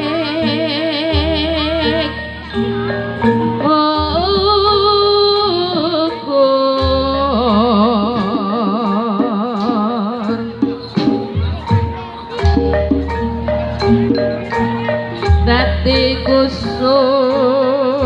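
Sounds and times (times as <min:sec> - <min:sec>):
person singing with vibrato: 0:00.0 - 0:02.9, 0:03.5 - 0:10.9, 0:15.2 - 0:18.0.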